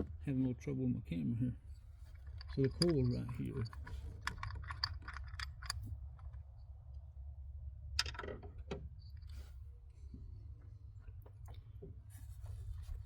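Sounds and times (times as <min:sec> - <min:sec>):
light handling clicks and taps: 0:02.2 - 0:06.4.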